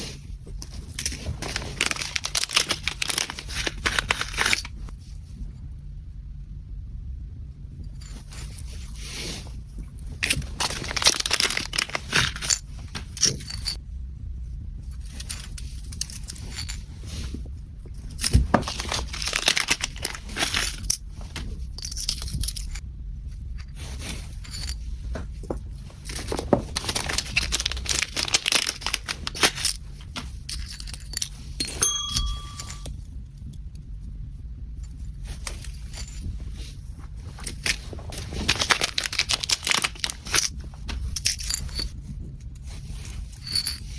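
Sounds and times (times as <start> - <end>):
low steady hum: 0.0 - 43.9
packaging crinkling and tearing: 0.7 - 4.9, 10.1 - 13.2, 18.2 - 21.4, 26.0 - 30.2, 37.2 - 40.8
short high tone: 31.8 - 32.9.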